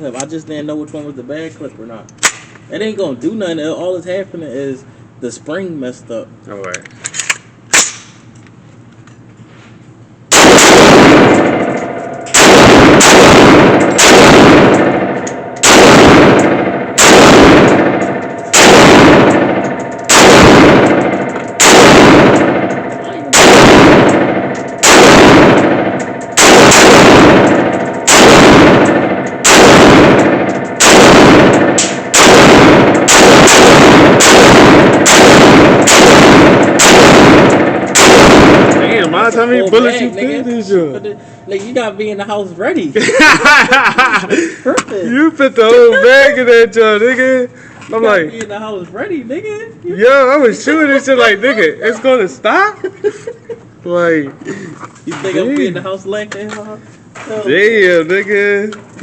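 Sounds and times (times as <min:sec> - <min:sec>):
echoing gunshots: 0:10.3 - 0:41.9.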